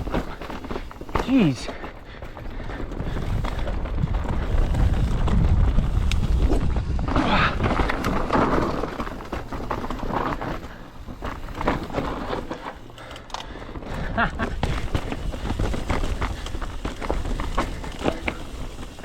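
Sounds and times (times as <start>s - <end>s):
bike clicks and rattles: 0.0s - 19.0s
bike tyres on dirt and rock: 0.0s - 19.0s
wind rumble on microphone: 2.4s - 9.3s.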